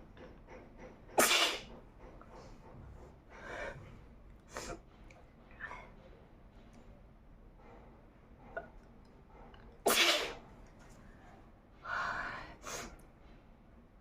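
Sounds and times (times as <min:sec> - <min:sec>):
woman sneezing: 0:09.9 - 0:10.4.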